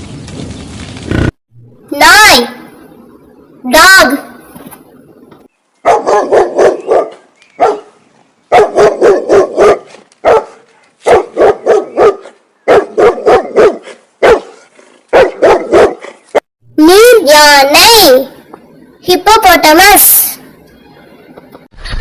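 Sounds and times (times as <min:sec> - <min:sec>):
dog barking: 0:05.8 - 0:16.4.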